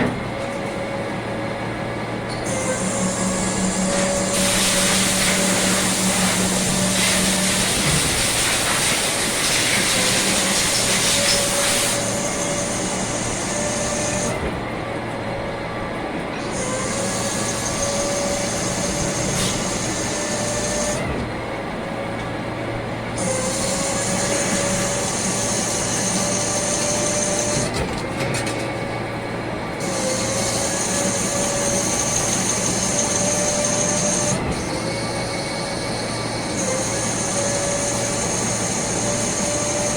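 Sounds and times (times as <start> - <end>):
lathe motor and spindle hum: 0.0 - 39.9
loud hiss: 3.6 - 12.1.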